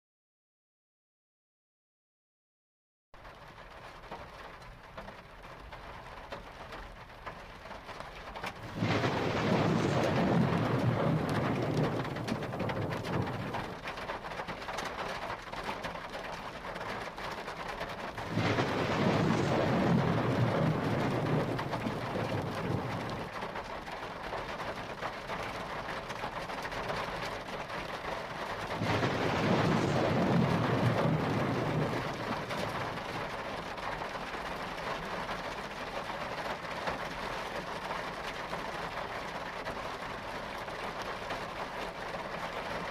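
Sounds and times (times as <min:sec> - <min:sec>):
steady rain falling: 0:03.2 - 0:42.9
thunder rolling: 0:08.5 - 0:14.3, 0:18.1 - 0:23.6, 0:28.5 - 0:33.7.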